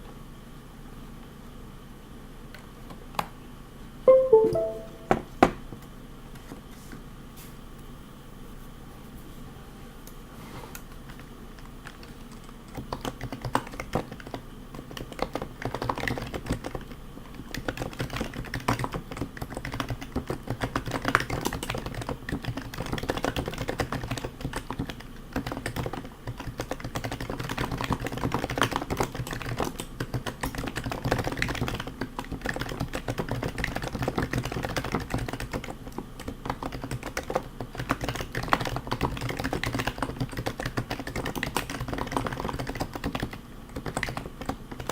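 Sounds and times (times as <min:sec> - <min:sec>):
fast typing on keyboard: 0:11.1 - 0:44.9.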